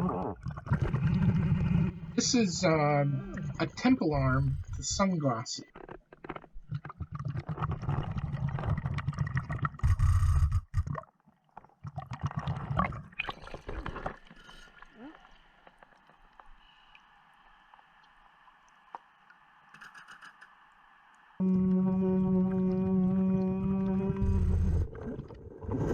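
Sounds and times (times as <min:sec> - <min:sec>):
underwater air bubbles gurgling: 0:00.0 - 0:04.8, 0:21.4 - 0:25.9
faint steady hum: 0:16.3 - 0:25.0.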